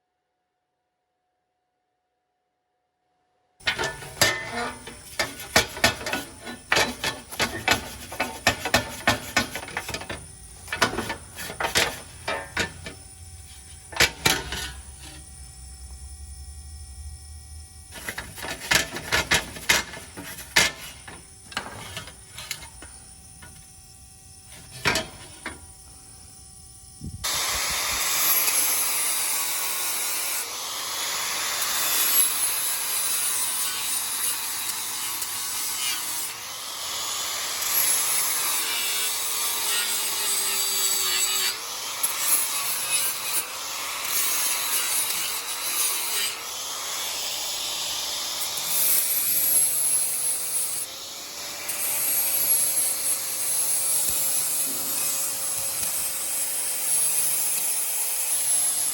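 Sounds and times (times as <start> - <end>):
tools and metal clinking: 3.6 - 15.3, 17.9 - 23.7, 24.5 - 25.9
abrasive scraping of metal: 3.6 - 15.4, 17.9 - 23.7, 24.4 - 26.1.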